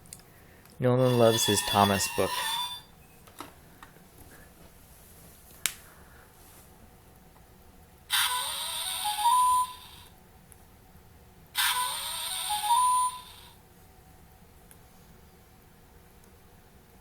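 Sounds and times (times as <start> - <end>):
electronic steam hiss with whistle: 1.0 - 2.9.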